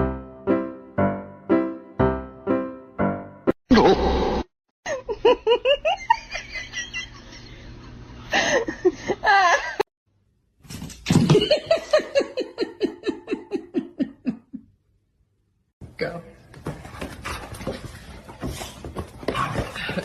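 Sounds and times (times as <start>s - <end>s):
people laughing: 11.4s - 14.6s.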